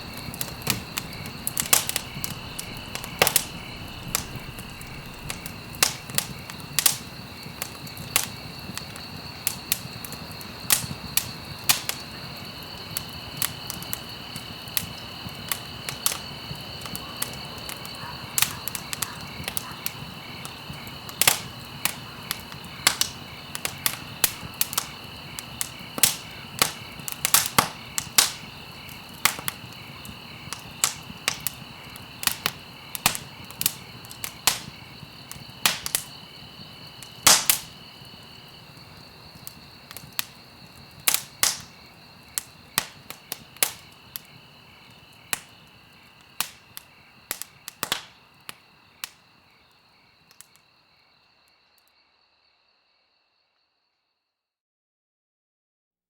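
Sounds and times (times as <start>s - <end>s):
soft hiss of flame: 0.0s - 17.3s
campfire crackling and popping: 0.0s - 50.6s.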